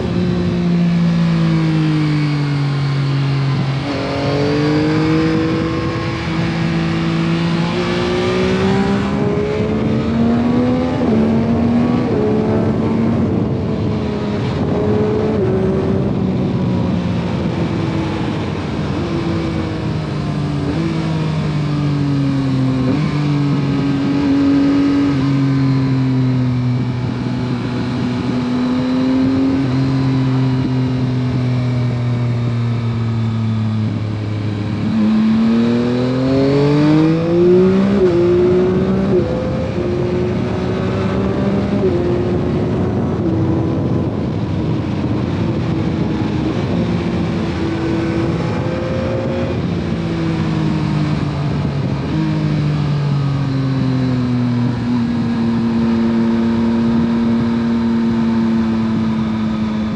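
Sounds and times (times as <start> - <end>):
motorcycle engine accelerating: 0.0 - 59.9
wind rushing: 3.1 - 21.1.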